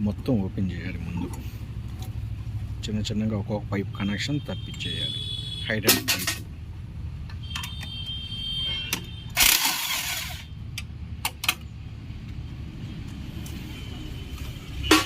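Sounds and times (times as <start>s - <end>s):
metal tools clinking and knocking: 5.8s - 6.5s.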